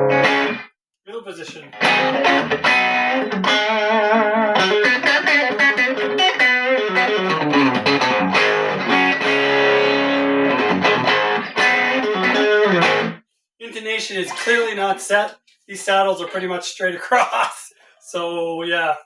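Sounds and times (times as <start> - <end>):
distorted electric guitar: 0.0 - 0.7, 1.6 - 13.2.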